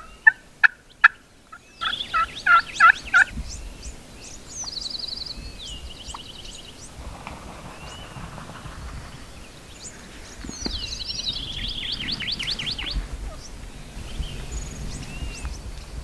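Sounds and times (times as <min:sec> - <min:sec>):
turkey gobbling: 0:00.0 - 0:03.3, 0:11.8 - 0:13.7
songbirds chirping and trilling: 0:00.0 - 0:16.0.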